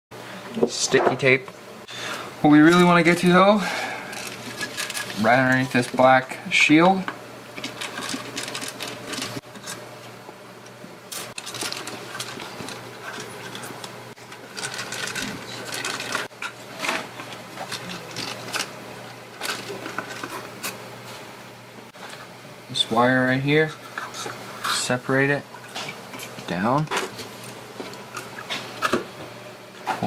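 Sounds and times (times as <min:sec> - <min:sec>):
steady low hum: 0:00.1 - 0:30.0
crackling clicking handling noises: 0:04.1 - 0:06.2, 0:07.0 - 0:21.2, 0:25.6 - 0:30.0.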